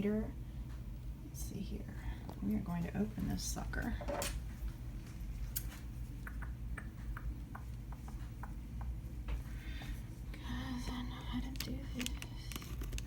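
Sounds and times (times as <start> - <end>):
low steady hum: 0.0 - 13.0
light clicks and taps: 10.8 - 13.0.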